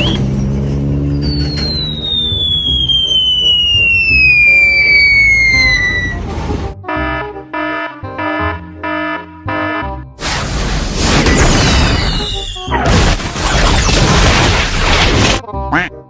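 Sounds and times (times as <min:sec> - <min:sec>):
falling whistle: 0:00.0 - 0:00.3, 0:01.1 - 0:06.2, 0:11.7 - 0:12.8
blaring multi-tone horn blasts: 0:03.1 - 0:10.0.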